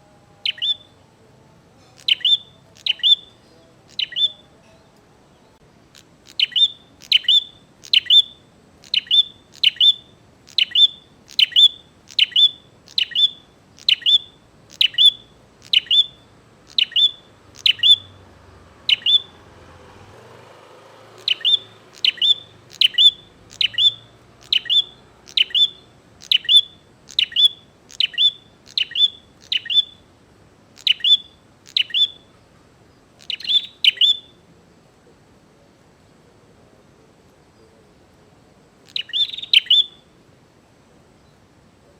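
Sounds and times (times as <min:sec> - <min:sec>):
bird calling sharp high chip notes: 0:02.0 - 0:04.4, 0:06.0 - 0:19.4, 0:21.1 - 0:30.1, 0:30.8 - 0:32.4, 0:33.2 - 0:34.4, 0:38.9 - 0:40.0.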